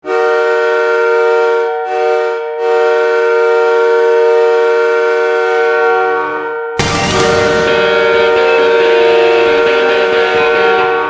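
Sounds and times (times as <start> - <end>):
goal horn blasts: 6.8 - 11.0.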